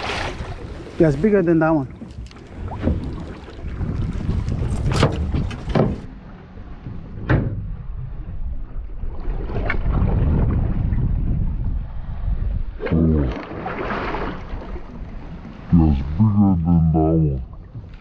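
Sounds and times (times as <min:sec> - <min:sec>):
boat engine rumble: 0:00.0 - 0:18.0
wind noise on microphone: 0:02.0 - 0:06.1, 0:06.8 - 0:13.4.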